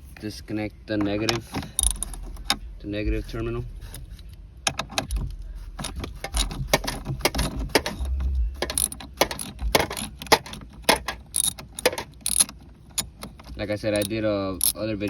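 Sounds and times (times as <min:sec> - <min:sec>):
hand tool clicking on metal: 0:01.3 - 0:02.6, 0:05.8 - 0:14.8.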